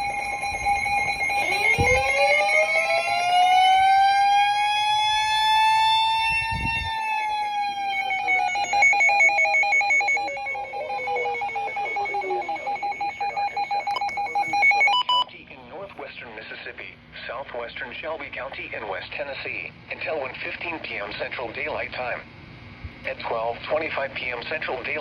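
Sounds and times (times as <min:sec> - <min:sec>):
siren rising and falling: 0:00.0 - 0:15.2
two-tone alarm: 0:00.0 - 0:15.3
rapid stuttering beep: 0:08.4 - 0:15.2.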